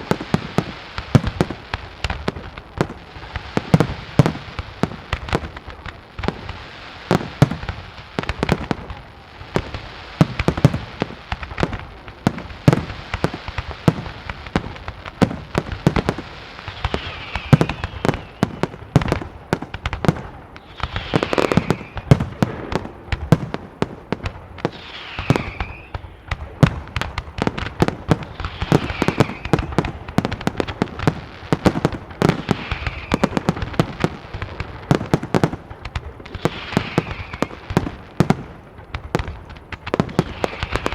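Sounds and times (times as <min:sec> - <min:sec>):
falling firework whistle: 0:15.6 - 0:19.2, 0:20.6 - 0:22.9, 0:24.6 - 0:26.4, 0:27.8 - 0:30.2, 0:32.2 - 0:34.4, 0:36.2 - 0:38.4, 0:39.9 - 0:40.9.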